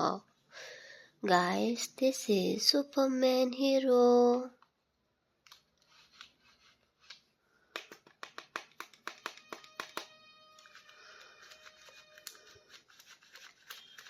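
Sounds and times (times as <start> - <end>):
plastic packaging clicking: 7.8 - 14.0.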